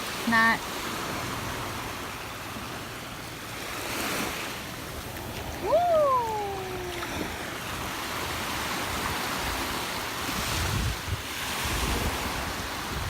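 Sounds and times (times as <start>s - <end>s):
surf washing on shore: 0.0s - 13.0s
wind buffeting microphone: 5.3s - 13.0s
short falling cry: 5.6s - 7.1s.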